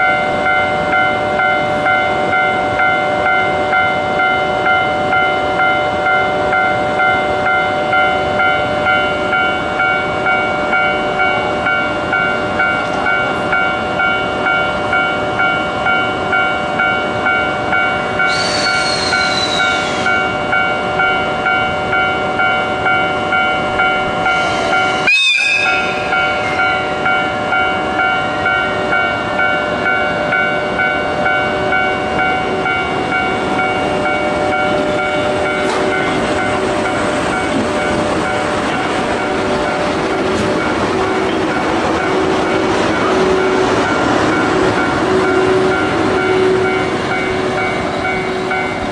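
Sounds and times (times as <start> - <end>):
level crossing warning bell: 0.0 - 48.9
passing train rolling: 0.0 - 48.9
train horn: 18.2 - 20.4, 24.3 - 26.9, 45.0 - 46.9.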